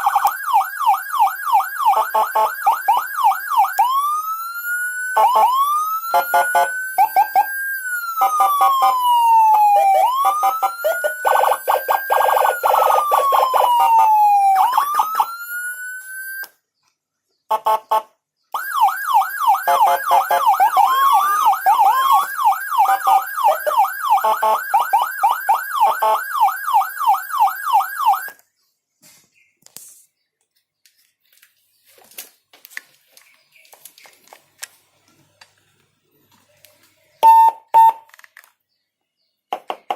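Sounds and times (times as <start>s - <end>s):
siren wailing: 0.0s - 16.5s, 18.6s - 28.4s
siren yelping: 0.0s - 16.5s, 18.6s - 28.4s.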